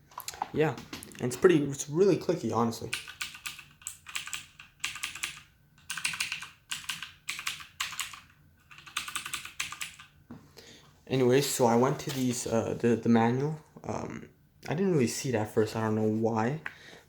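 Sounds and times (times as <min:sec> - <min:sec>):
clicky keyboard typing: 0:02.9 - 0:10.1.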